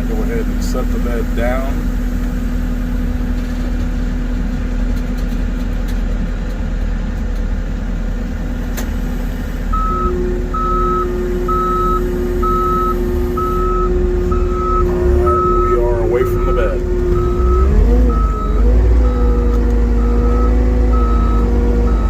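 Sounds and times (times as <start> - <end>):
truck diesel engine running: 0.0 - 22.0
reversing alarm beeping: 9.7 - 22.0.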